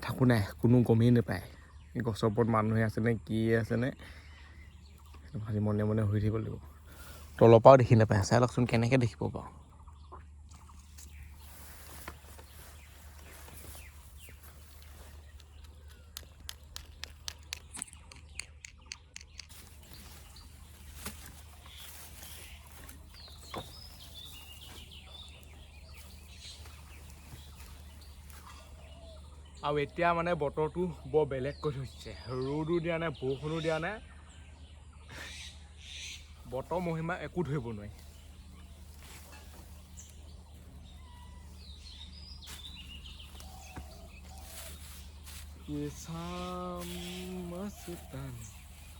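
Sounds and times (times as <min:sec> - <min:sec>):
birds chirping: 0:00.0 - 0:48.9
steady low hum: 0:34.0 - 0:48.9.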